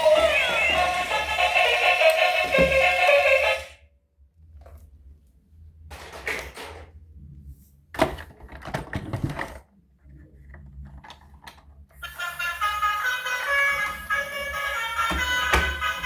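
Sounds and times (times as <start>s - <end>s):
music: 0.0s - 3.8s, 12.0s - 16.0s.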